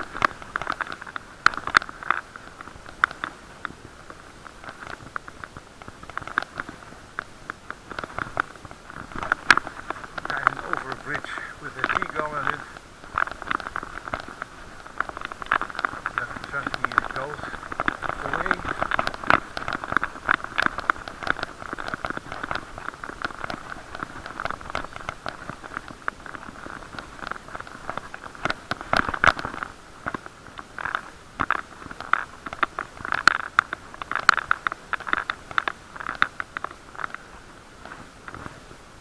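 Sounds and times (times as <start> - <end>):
crackling and knocking from bumps: 0.0 - 38.7
muffled bicycle ride noise: 0.0 - 39.0.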